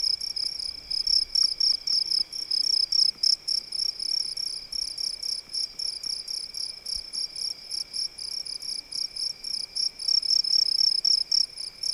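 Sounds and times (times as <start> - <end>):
crickets chirping: 0.0 - 11.9.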